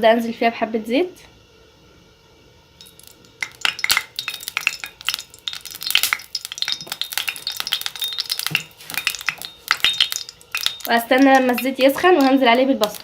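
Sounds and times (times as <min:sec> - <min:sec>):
utensils clinking on pot: 0:02.8 - 0:13.0.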